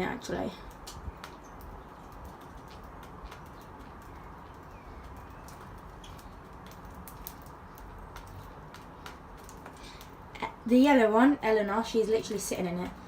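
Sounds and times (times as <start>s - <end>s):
small sharp clicks: 0.7s - 10.2s.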